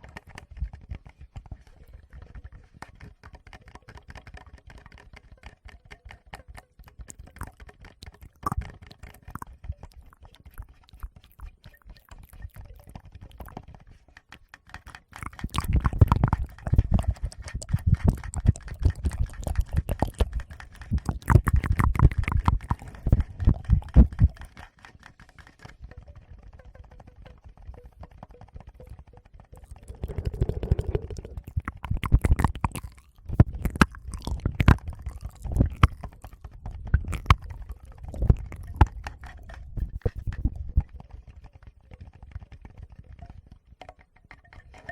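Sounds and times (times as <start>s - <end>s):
deep thumps and scratches: 15.2s - 24.4s, 29.5s - 41.0s.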